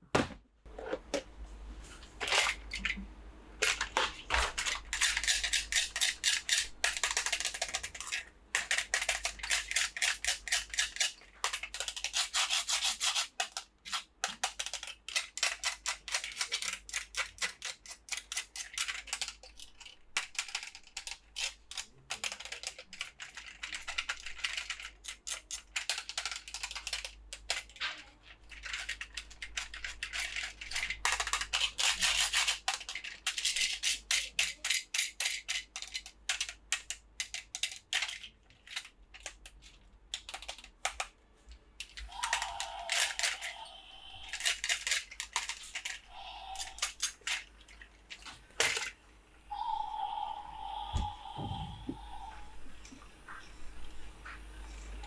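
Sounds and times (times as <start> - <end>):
small plastic clicks: 3.6 - 41.1
scratchy rubbing of packaging: 9.4 - 14.1.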